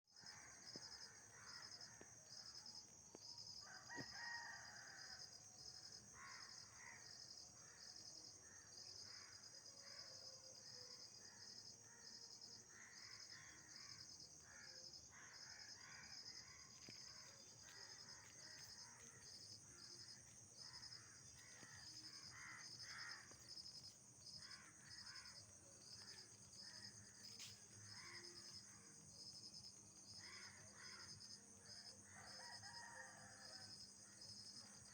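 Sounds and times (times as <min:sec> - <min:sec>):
insect chirping in even pulse: 0:12.4 - 0:31.3.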